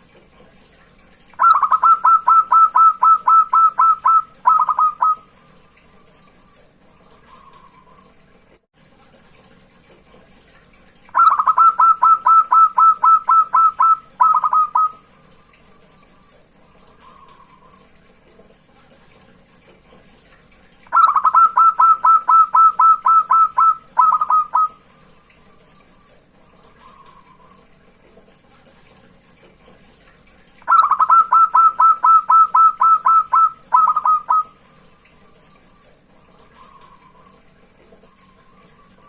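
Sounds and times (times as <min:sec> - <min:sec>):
dove cooing song: 0:01.4 - 0:05.4, 0:11.1 - 0:15.0, 0:20.9 - 0:24.9, 0:30.6 - 0:34.6.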